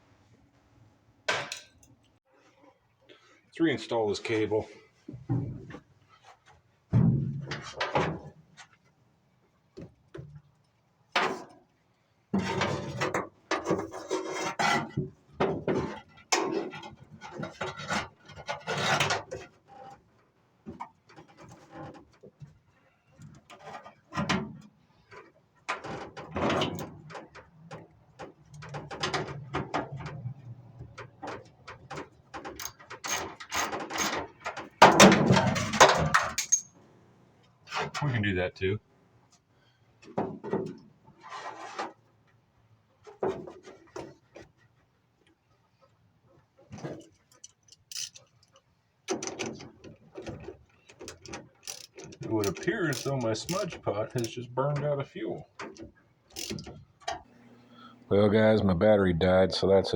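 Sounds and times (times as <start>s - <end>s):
hand tools and metal parts rattling: 12.3s - 38.0s, 46.6s - 57.9s.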